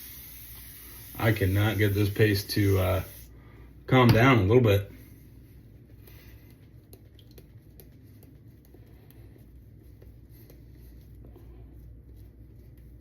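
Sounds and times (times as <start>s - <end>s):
shaving brush squishing soap: 5.6s - 13.0s.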